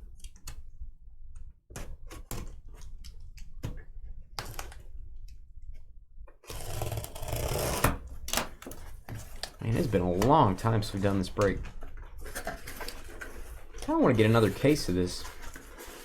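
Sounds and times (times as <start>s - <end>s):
rough scraping or rustling: 12.2s - 16.0s.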